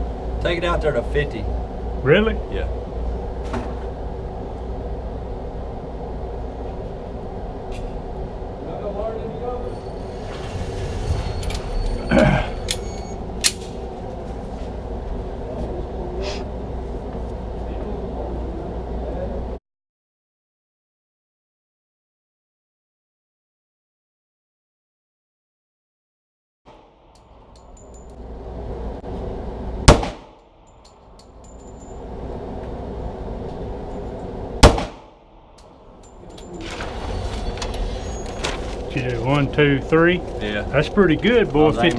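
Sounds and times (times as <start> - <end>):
steady background hum: 0.0 - 19.6, 26.7 - 41.9
target carrier motor hum: 26.7 - 41.9
sharp cracks: 29.8 - 30.5, 34.6 - 35.7
pistol shots with echo: 29.9 - 30.4, 34.6 - 35.1.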